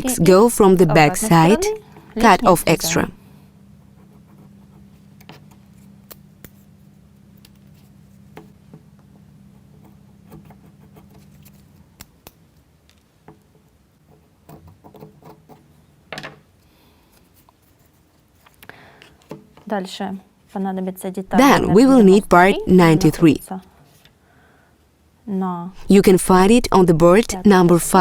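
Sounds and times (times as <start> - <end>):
low steady hum: 0.0 - 3.2, 21.3 - 23.4, 25.8 - 28.0.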